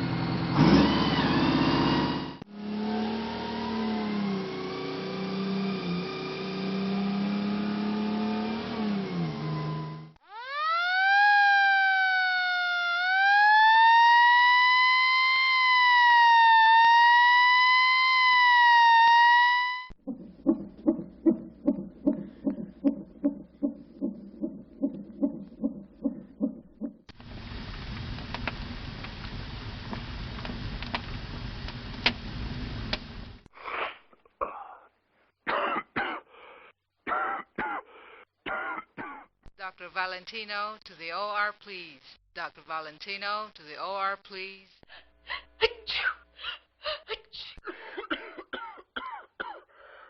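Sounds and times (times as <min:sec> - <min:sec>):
emergency siren wailing: 0:00.0 - 0:20.0
low rhythmic pulsing: 0:19.9 - 0:27.1
person clearing throat: 0:33.6 - 0:34.9, 0:35.5 - 0:36.3, 0:37.1 - 0:39.3, 0:47.1 - 0:49.7
person coughing: 0:33.6 - 0:34.9, 0:35.5 - 0:39.3, 0:45.3 - 0:49.8.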